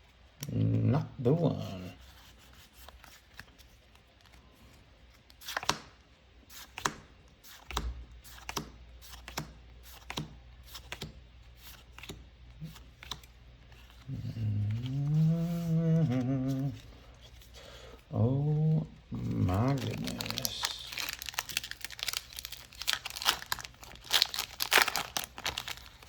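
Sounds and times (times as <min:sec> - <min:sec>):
faint low hum: 0:07.2 - 0:26.0
foil wrapper rustling: 0:19.3 - 0:26.0.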